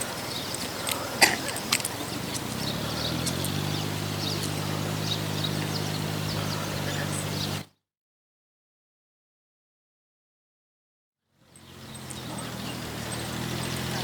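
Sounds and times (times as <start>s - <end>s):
sharp clicks: 0.0s - 3.6s
low motor hum: 0.0s - 7.7s, 11.5s - 14.0s.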